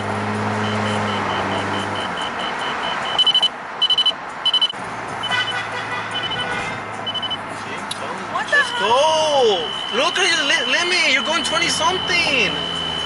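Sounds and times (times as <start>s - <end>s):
high-pitched beeps: 0.6s - 5.5s, 6.2s - 7.4s, 8.9s - 13.0s
car horn honking: 0.6s - 7.4s, 8.5s - 13.0s.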